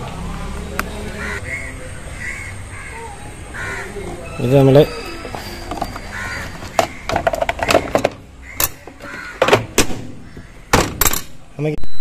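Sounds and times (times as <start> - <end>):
crows cawing: 1.1 - 10.8
sharp clicks and knocks: 6.7 - 10.0.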